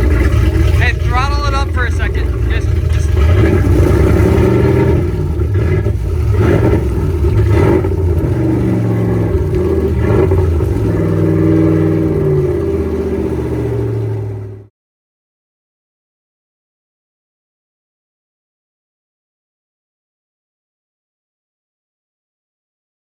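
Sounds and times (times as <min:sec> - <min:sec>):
boat engine revving: 0:00.0 - 0:14.7.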